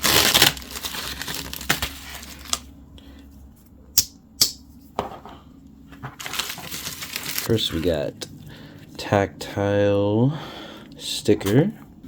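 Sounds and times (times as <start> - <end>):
knife slitting packaging: 0.0 - 2.6.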